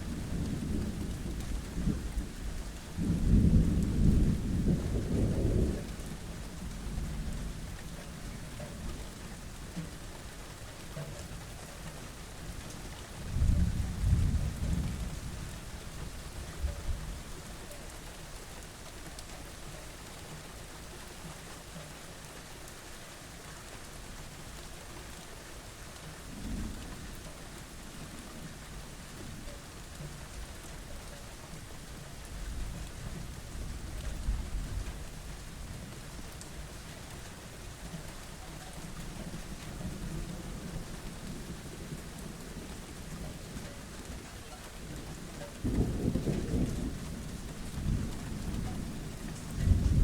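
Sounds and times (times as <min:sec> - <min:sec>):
steady rain: 0:00.0 - 0:50.0
rolling thunder: 0:03.0 - 0:06.0, 0:45.6 - 0:50.0.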